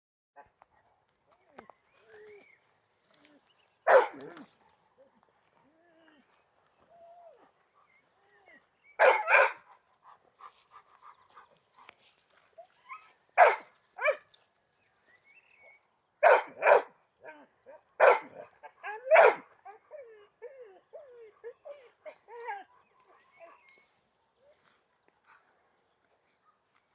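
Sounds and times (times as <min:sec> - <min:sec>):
dog barking: 0:03.9 - 0:05.8, 0:09.0 - 0:09.7, 0:13.4 - 0:14.2, 0:16.2 - 0:17.0, 0:17.7 - 0:19.5.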